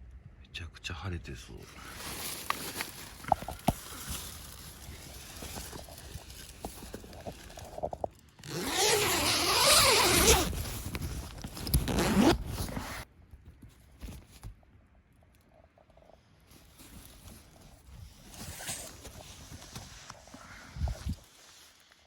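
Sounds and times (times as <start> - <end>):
tent zipper being pulled: 2.8 - 13.1, 17.1 - 21.8.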